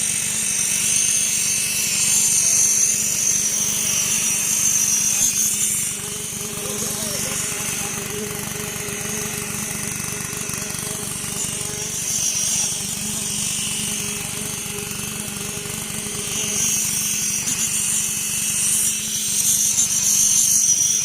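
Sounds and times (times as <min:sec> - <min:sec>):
construction machinery engine: 0:00.0 - 0:21.0
high grinding hiss: 0:00.0 - 0:21.0.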